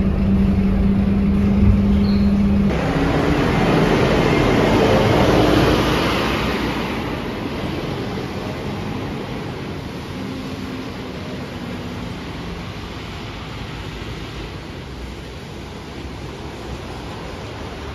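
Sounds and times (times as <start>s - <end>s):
steady hum: 0.0s - 4.8s
bus engine and road noise: 0.0s - 17.9s.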